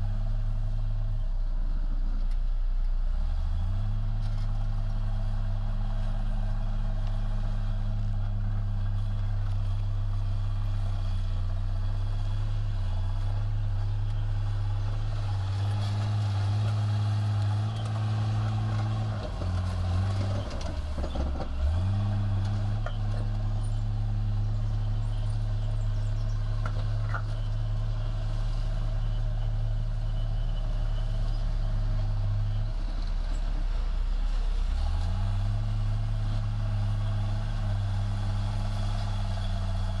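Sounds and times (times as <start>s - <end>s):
bulldozer diesel engine running: 0.0s - 40.0s.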